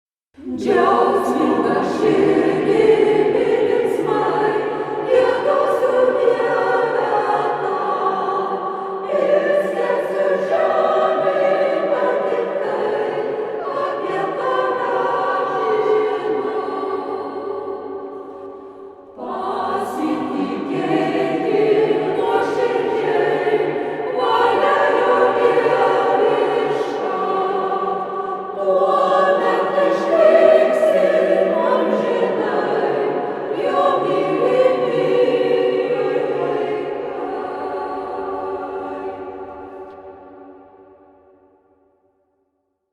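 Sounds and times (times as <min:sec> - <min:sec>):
church choir singing: 0:00.4 - 0:42.0.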